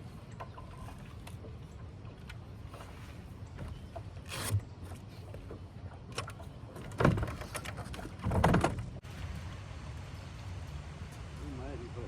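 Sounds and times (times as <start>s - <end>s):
bumps and rustles in metal boat: 0.0s - 9.1s.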